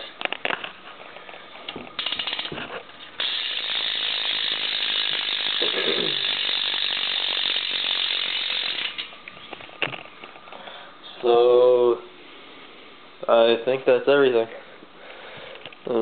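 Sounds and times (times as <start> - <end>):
bike hub ratcheting clicks: 2.0 - 2.6, 3.2 - 9.1.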